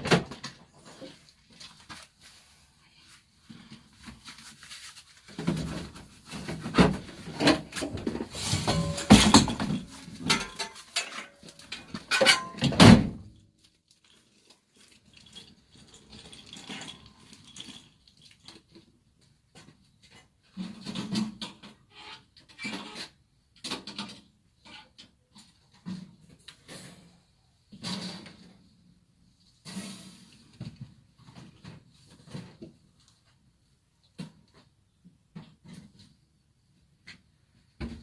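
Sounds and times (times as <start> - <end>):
scrap metal clattering: 5.4 - 12.7.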